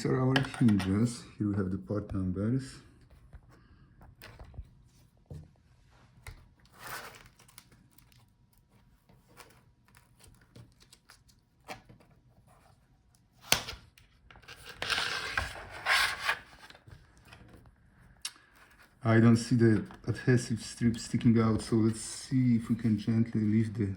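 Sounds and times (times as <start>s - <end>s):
rustling crinkling scrapes: 5.8s - 13.4s.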